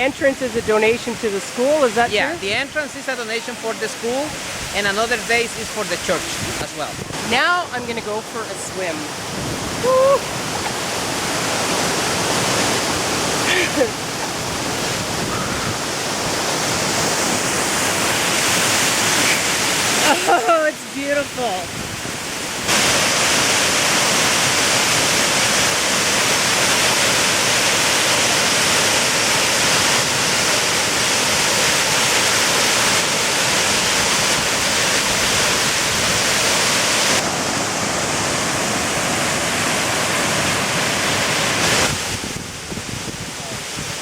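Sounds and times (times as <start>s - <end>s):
waterfall rushing into pool: 0.0s - 44.0s.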